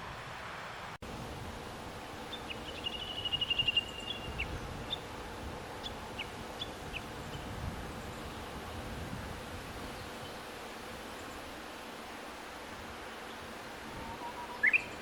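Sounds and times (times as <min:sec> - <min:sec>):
outdoor background noise: 0:00.0 - 0:15.0
bird call notes: 0:02.3 - 0:05.0, 0:14.0 - 0:15.0
bird trilling: 0:02.3 - 0:05.0, 0:14.0 - 0:15.0.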